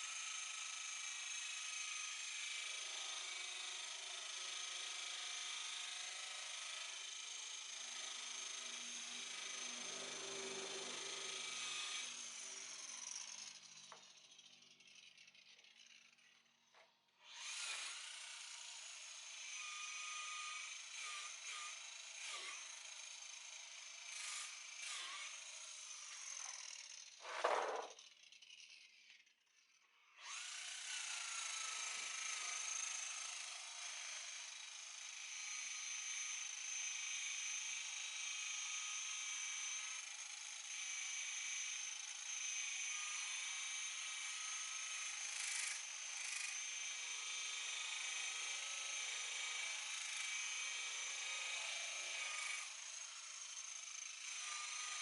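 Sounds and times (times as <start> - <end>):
electric buffer whining: 27.2 - 28.0.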